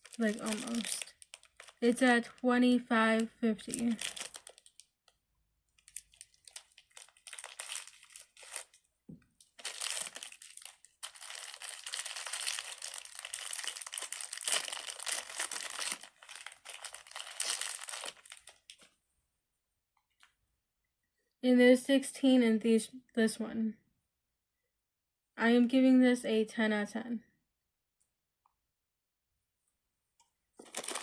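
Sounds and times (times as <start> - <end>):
plastic packaging crinkling: 0.0 - 2.4, 3.0 - 5.2, 5.8 - 18.9, 30.6 - 31.0.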